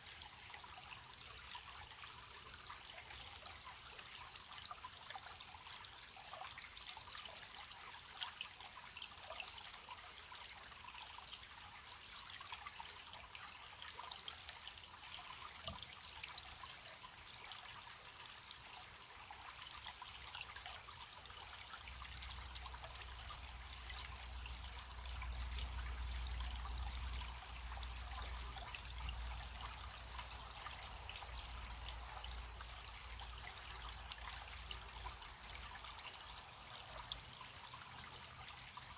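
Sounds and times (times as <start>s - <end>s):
stream trickling over stones: 0.0s - 38.9s
crickets chirping: 21.5s - 38.9s.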